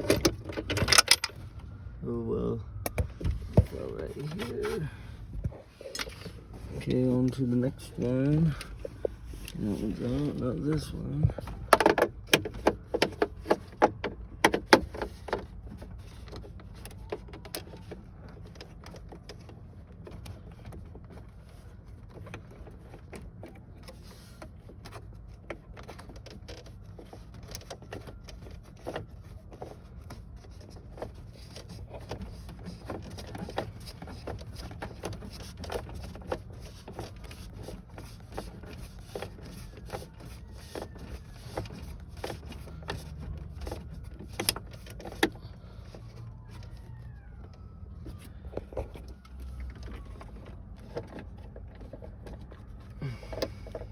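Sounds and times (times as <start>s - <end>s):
steady low hum: 0.0s - 13.8s.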